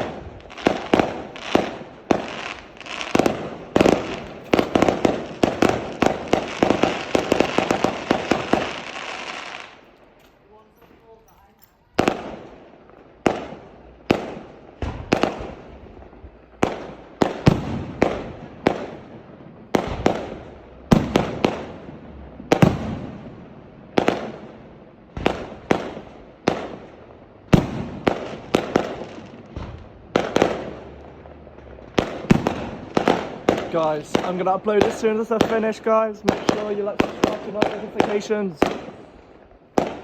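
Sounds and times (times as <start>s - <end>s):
fireworks bangs: 0.0s - 40.0s.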